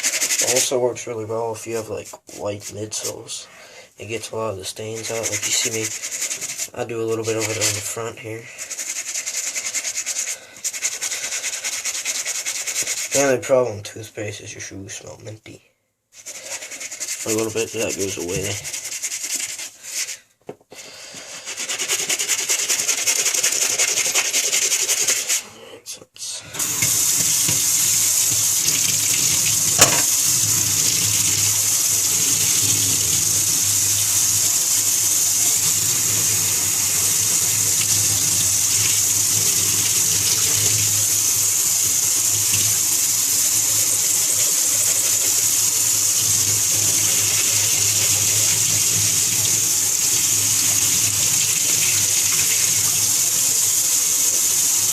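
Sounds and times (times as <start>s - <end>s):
water tap running: 16.2s - 20.1s, 21.3s - 25.4s, 26.6s - 54.9s.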